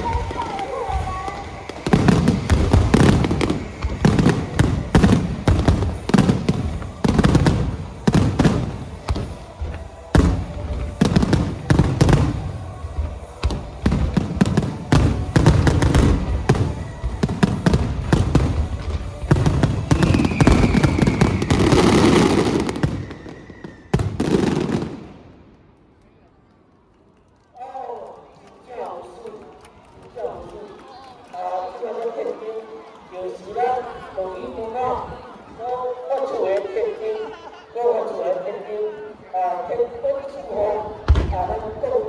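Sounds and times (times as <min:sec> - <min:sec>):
fireworks bursting: 0:00.0 - 0:26.0.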